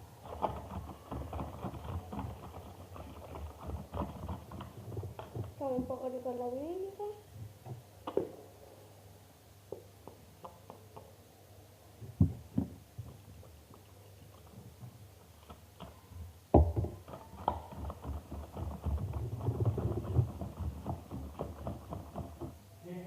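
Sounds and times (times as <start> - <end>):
rapid small knocks and rubbing: 0.0 - 6.2, 7.3 - 8.3, 12.0 - 22.6.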